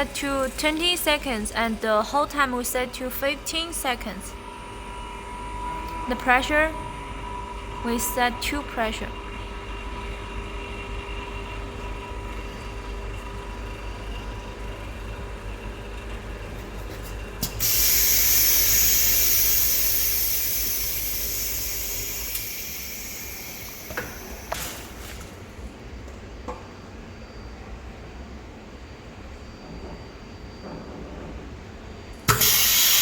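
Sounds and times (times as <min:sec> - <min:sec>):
pump hum: 0:04.0 - 0:25.8
air hissing into chamber: 0:17.6 - 0:25.2, 0:32.3 - 0:33.0.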